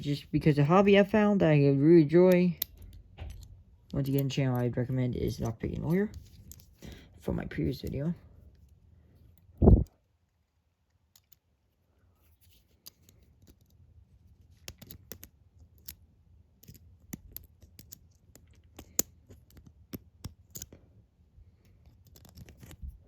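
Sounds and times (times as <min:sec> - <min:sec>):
lock pick clicking in padlock: 0:02.6 - 0:04.7, 0:16.6 - 0:20.8.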